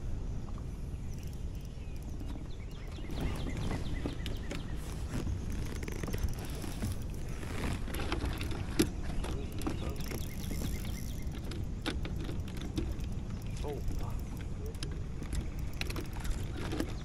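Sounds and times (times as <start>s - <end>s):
wind rumbling on microphone: 0.0s - 17.0s
knocks and clatter of handling: 5.5s - 17.0s.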